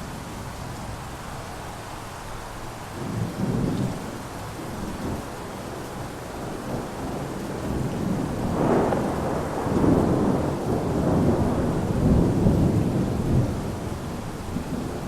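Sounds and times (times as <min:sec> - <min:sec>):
steady rain: 0:00.0 - 0:15.0
rolling thunder: 0:06.4 - 0:15.0.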